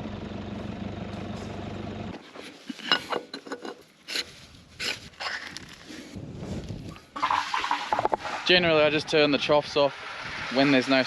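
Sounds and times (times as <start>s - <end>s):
vehicle engine idling: 0.0s - 2.2s.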